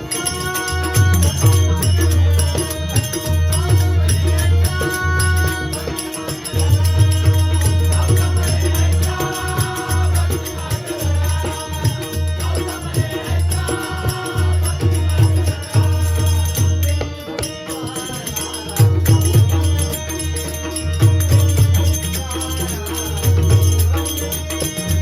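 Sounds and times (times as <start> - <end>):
jingling metal percussion: 0.0 - 25.0.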